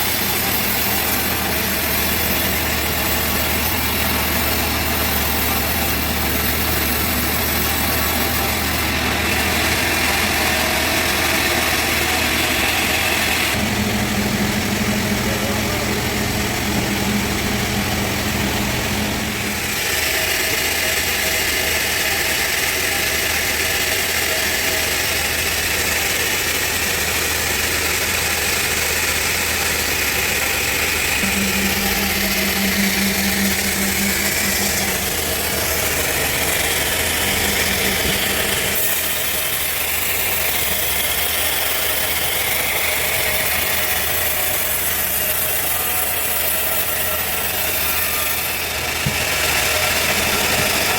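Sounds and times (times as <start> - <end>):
machine whine: 0.0 - 50.9
sawmill engine drone: 0.0 - 50.9
low hum: 13.5 - 20.2, 31.2 - 39.6.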